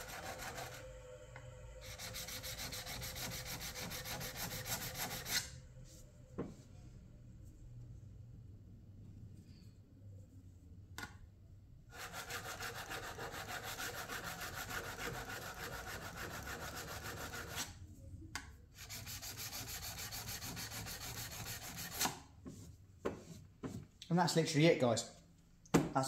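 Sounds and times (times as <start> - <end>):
chisel rasping on sharpening stone: 1.9 - 5.6, 12.0 - 17.7.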